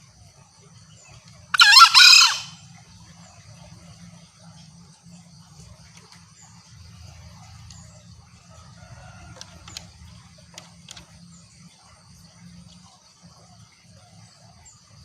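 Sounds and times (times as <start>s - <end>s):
steady low hum: 0.0s - 15.0s
junglefowl calling: 1.5s - 2.8s.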